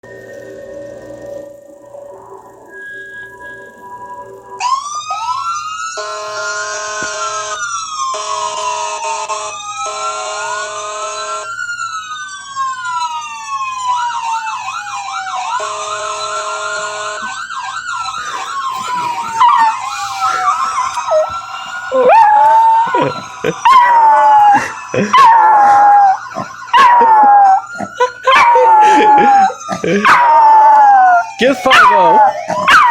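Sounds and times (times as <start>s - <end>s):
police siren wailing: 0.0s - 32.9s
puppy howling: 18.3s - 32.9s.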